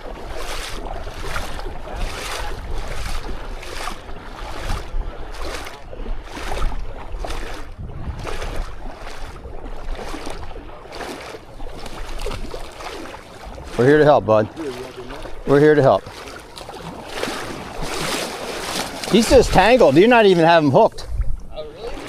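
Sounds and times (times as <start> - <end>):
wind on microphone: 0.0 - 10.8, 13.3 - 15.5, 20.9 - 22.0
waves washing: 0.0 - 22.0.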